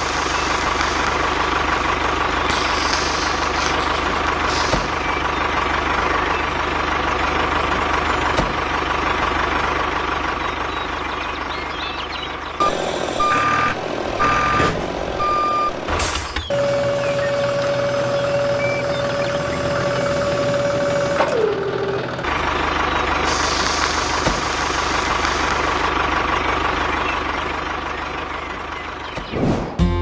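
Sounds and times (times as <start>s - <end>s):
engine running: 0.0s - 30.0s
reversing alarm beeping: 12.6s - 22.0s.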